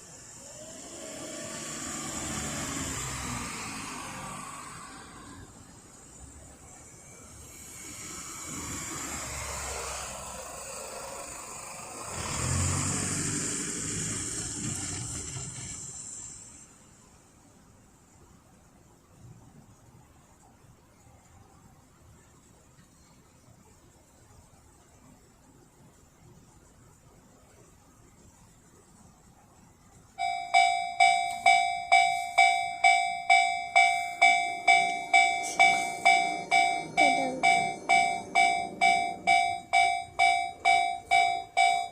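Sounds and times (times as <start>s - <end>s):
vehicle driving past: 0.4s - 16.6s
level crossing warning bell: 30.2s - 41.9s.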